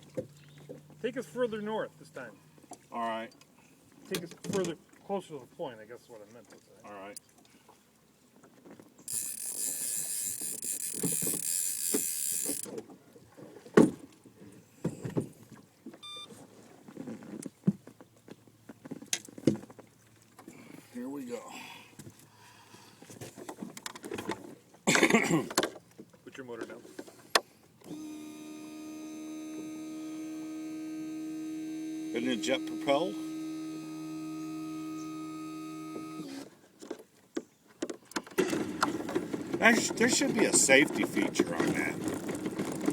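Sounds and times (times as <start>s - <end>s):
boat motor whining: 9.1s - 12.8s, 27.8s - 36.6s, 38.3s - 42.9s
brief beep: 16.0s - 16.4s
gear knocking in boat: 37.8s - 42.9s.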